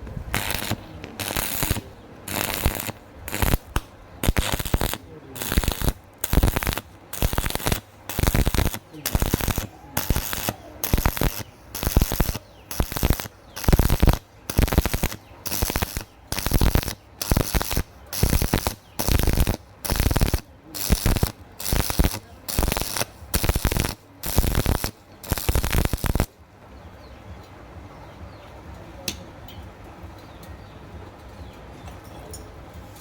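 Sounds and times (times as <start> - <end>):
welding arc crackling: 0.0 - 26.3.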